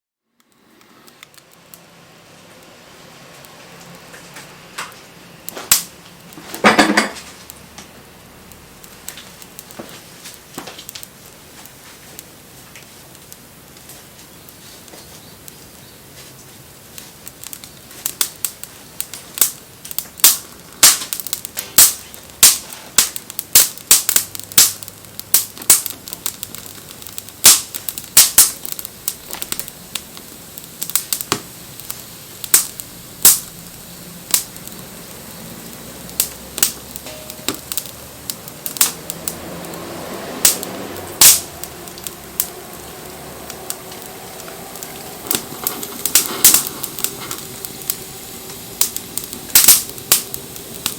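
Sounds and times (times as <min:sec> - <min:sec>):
bonfire crackling and popping: 0:00.4 - 0:50.9
soft hiss with faint whistling: 0:11.2 - 0:19.8, 0:26.7 - 0:37.4, 0:42.2 - 0:50.9.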